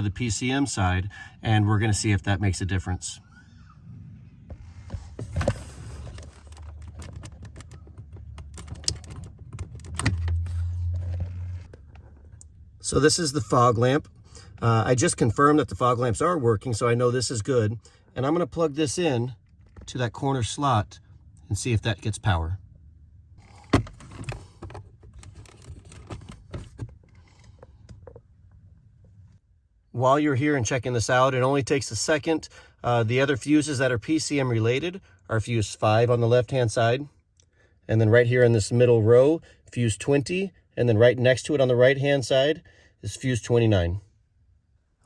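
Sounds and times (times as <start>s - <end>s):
steady low hum: 0.9s - 19.0s.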